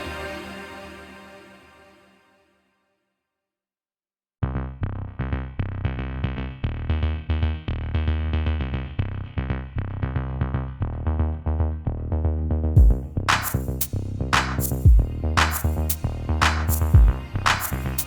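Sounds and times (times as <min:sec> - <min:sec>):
electronic music with deep bass: 0:10.8 - 0:18.0.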